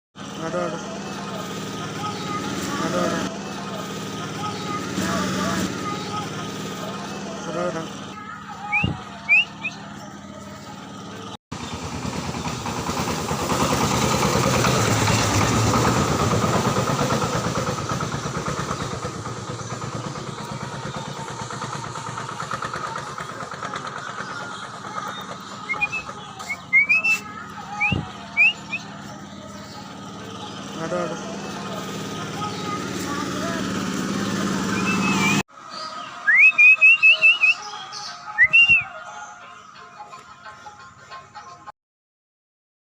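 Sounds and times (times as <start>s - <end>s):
motor vehicle passing: 0.2s - 38.8s
rising bird chirps: 24.0s - 29.0s, 34.7s - 39.0s.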